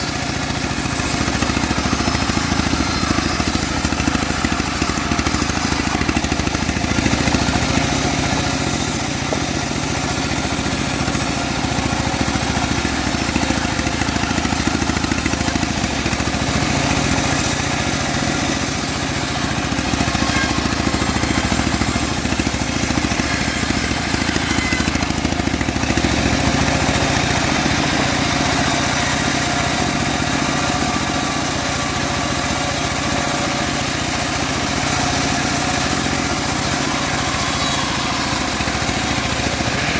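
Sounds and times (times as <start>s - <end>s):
bandsaw sawmill running: 0.0s - 39.9s.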